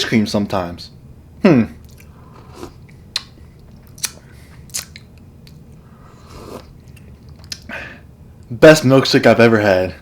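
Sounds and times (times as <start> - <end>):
lip smacking mouth sounds: 1.8 - 5.8, 6.4 - 7.7.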